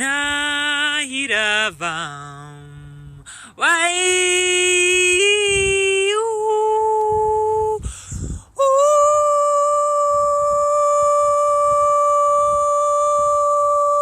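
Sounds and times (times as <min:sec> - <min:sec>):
woman breathing in: 0:07.8 - 0:08.6.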